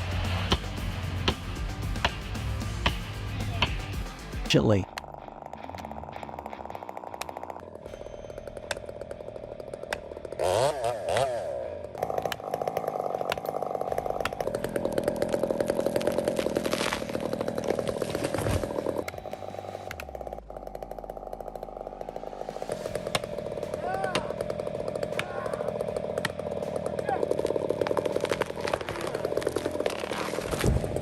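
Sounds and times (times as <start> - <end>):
chainsaw cutting wood: 0.0 - 31.0.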